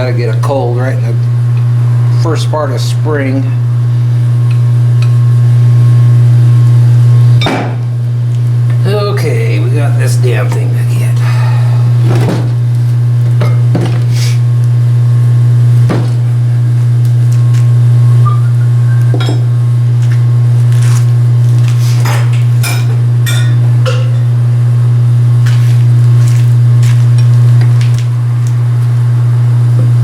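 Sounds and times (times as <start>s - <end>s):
low steady hum: 0.0s - 30.0s.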